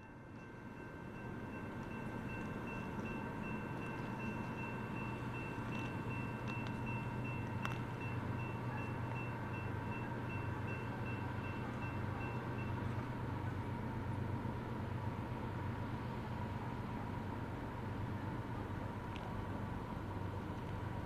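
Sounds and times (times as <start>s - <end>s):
pulsing high ringing tone: 0.0s - 13.2s
train rumbling past: 0.0s - 21.0s.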